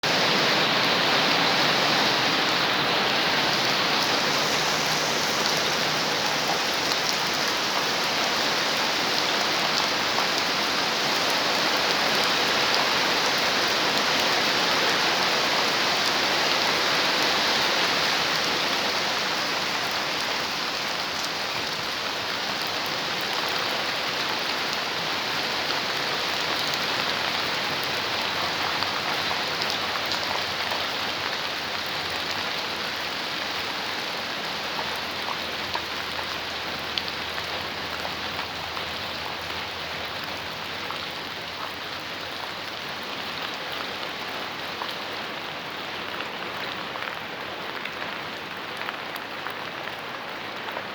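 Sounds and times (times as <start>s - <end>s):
steady rain falling: 0.0s - 50.9s.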